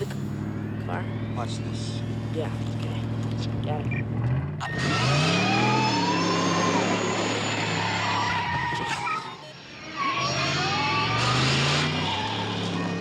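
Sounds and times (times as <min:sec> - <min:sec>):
car engine revving: 0:00.0 - 0:13.0
tyres squealing: 0:04.6 - 0:13.0.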